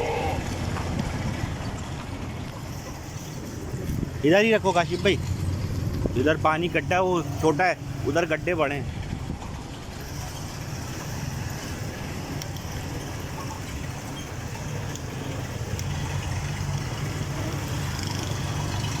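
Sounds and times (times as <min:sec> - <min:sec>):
vehicle engine humming: 0:00.0 - 0:19.0.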